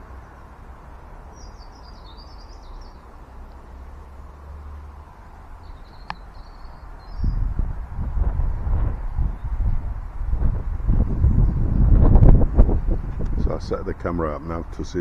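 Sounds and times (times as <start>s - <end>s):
low background rumble: 0.0s - 15.0s
small birds twittering: 1.2s - 4.2s, 4.8s - 7.8s, 9.0s - 10.1s, 10.9s - 13.8s.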